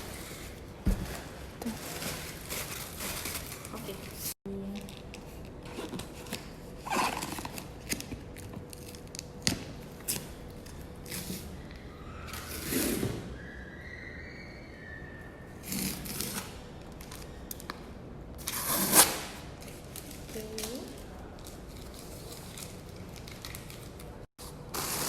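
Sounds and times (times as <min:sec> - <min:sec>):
tape and cardboard rustling: 0:00.0 - 0:09.3, 0:18.4 - 0:25.0.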